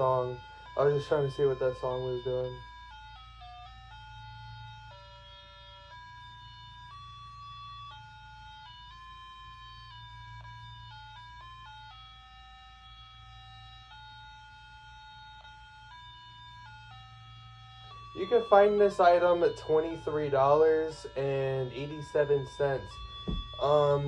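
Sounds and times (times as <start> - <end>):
electronic beep tone melody: 18.2 - 24.0.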